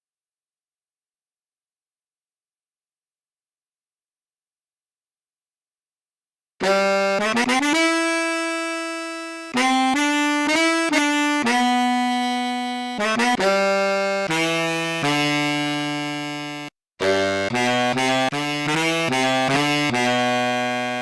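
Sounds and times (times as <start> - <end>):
sampled saxophone phrase: 6.6 - 21.0.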